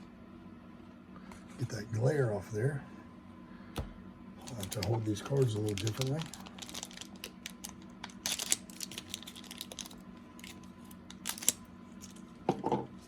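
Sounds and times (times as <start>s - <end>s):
faint steady hum: 0.0s - 13.0s
card rustles: 4.4s - 12.2s
cards clicking and brushing: 4.5s - 12.2s.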